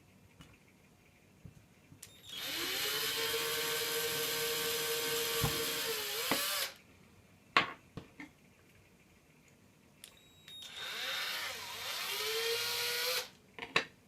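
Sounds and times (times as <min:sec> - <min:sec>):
electric drill whining: 0:02.2 - 0:06.8, 0:10.6 - 0:13.3.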